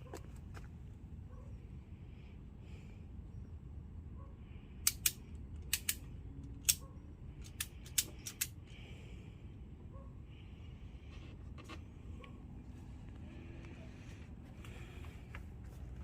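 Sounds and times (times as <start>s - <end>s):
steady low rumble: 0.0s - 16.0s
sharp clicks or snaps: 4.8s - 6.8s, 7.4s - 8.6s.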